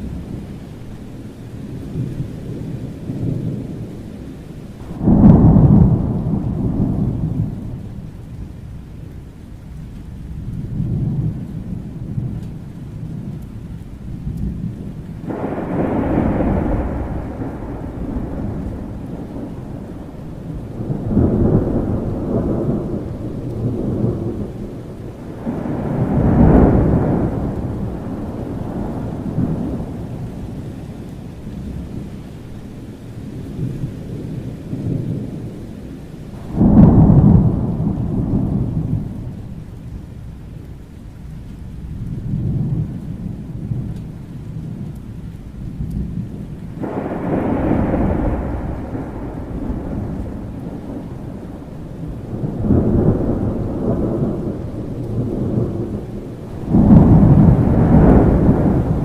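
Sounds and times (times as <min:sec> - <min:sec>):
steady rain: 0:00.0 - 0:59.0
thunder rumbling: 0:00.0 - 0:59.0
thunder crack: 0:04.8 - 0:08.1, 0:14.5 - 0:30.5, 0:36.3 - 0:39.6, 0:46.0 - 0:59.0.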